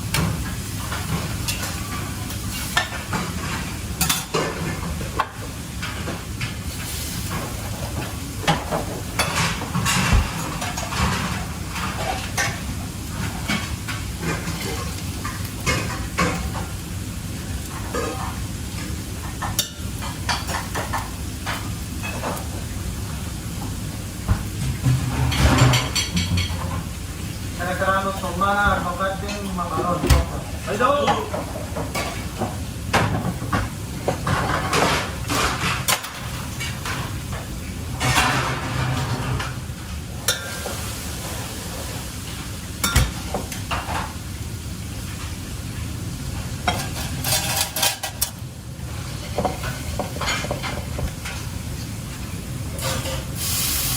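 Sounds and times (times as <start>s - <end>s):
food sizzling in a pan: 0.0s - 53.9s
frying hiss: 0.0s - 53.9s.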